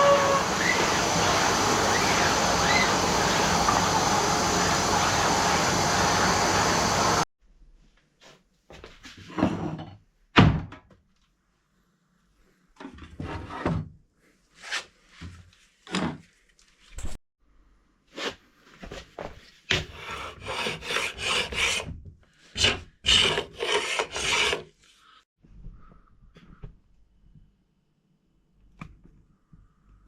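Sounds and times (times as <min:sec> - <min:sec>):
loud steady rushing noise: 0:00.0 - 0:07.2.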